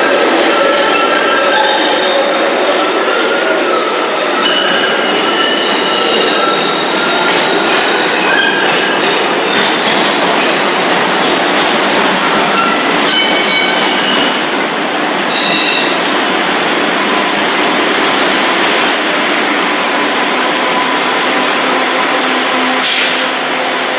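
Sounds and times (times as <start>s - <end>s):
subway train rumbling on rails: 0.0s - 23.9s
high-pitched wheel squeals: 15.3s - 16.0s.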